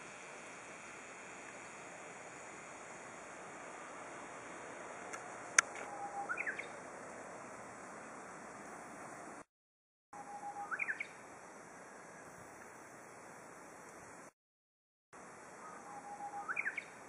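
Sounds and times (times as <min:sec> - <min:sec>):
steady hiss: 0:00.0 - 0:09.5, 0:10.7 - 0:14.4
bird singing whistled phrase: 0:05.9 - 0:06.7, 0:10.2 - 0:11.1, 0:15.6 - 0:16.9.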